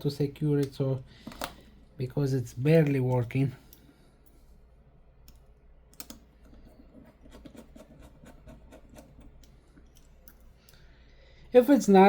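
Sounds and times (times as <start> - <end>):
steady low hum: 0.0 - 12.0
light clicks of small tools: 2.8 - 4.4, 5.2 - 6.6.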